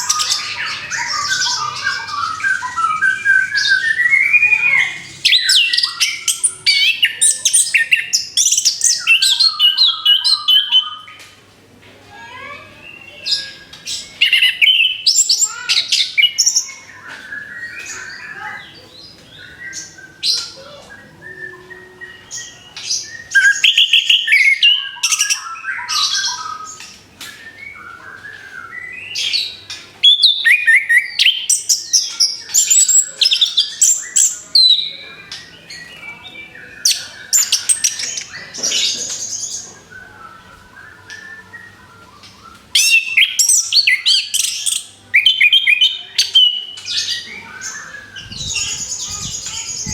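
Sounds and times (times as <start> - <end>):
quiet bird twittering: 12.4 - 49.9.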